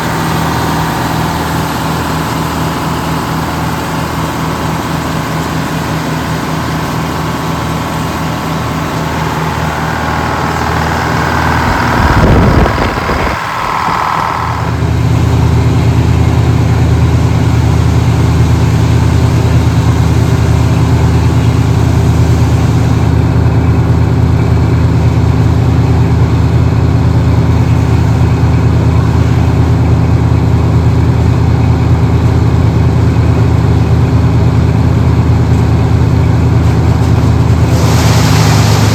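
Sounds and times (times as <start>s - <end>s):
large engine running: 0.0s - 38.9s
higher-pitched noise: 7.8s - 15.4s.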